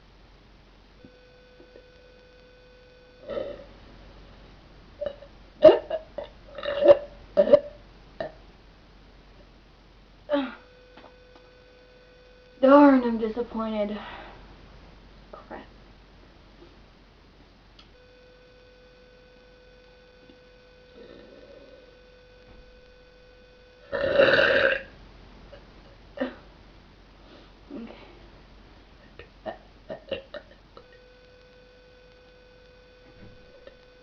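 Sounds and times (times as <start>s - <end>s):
girl burping: 3.2s - 3.7s, 5.0s - 8.4s, 10.3s - 10.6s, 23.9s - 24.9s, 26.2s - 26.5s, 29.2s - 30.9s.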